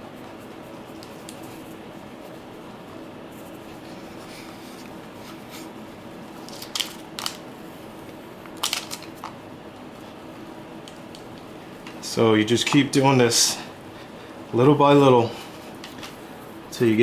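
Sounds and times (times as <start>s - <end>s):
ball rubbing on textured pad: 0.0s - 5.8s
steady low hum: 0.0s - 17.0s.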